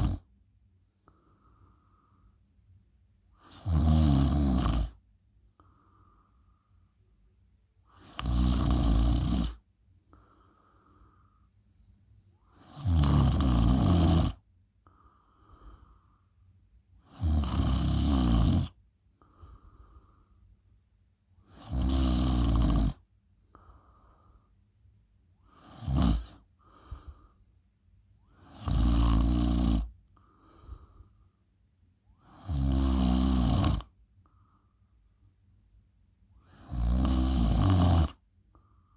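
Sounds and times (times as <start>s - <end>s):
soft breathing: 0.8s - 2.6s, 5.4s - 7.2s, 9.9s - 12.7s, 14.8s - 16.6s, 19.1s - 20.6s, 23.3s - 24.8s, 25.4s - 28.5s, 29.8s - 32.2s, 34.2s - 35.4s
person snoring: 3.5s - 5.0s, 8.0s - 9.6s, 12.5s - 14.4s, 17.1s - 18.8s, 21.5s - 23.0s, 25.6s - 27.2s, 28.4s - 29.9s, 32.2s - 33.9s, 36.5s - 38.2s.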